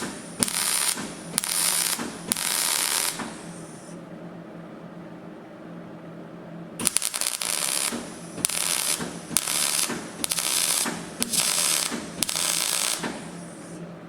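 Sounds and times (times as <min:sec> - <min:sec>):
welding arc crackling and hissing: 0:00.0 - 0:04.0, 0:06.8 - 0:13.8.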